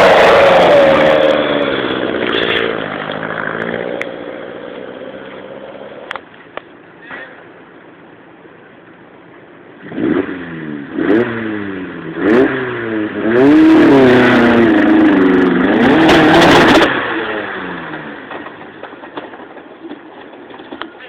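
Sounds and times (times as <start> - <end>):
car engine revving hard: 0.0 - 4.0, 9.8 - 18.2.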